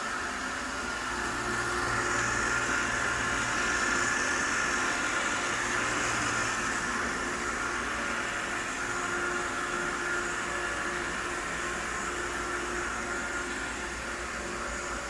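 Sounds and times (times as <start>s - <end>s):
robot vacuum cleaner whirring: 0.0s - 15.0s.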